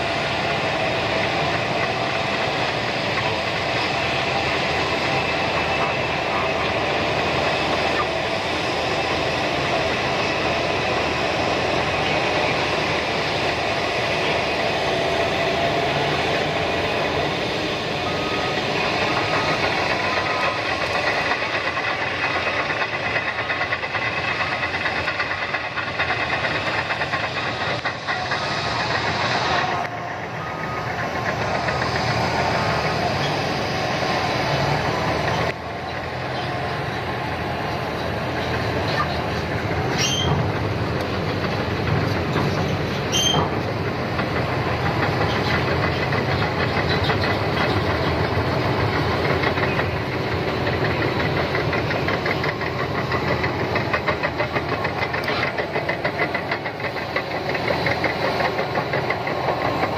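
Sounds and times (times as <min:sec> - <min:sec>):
bulldozer engine and tracks clatter: 0:00.0 - 0:59.9
short high squeaks: 0:39.9 - 0:40.4, 0:42.4 - 0:43.6.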